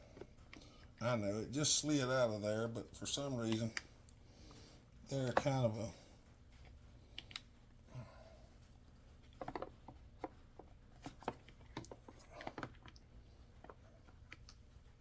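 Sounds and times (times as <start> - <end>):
clicks and taps of plastic and metal: 9.3 - 13.0.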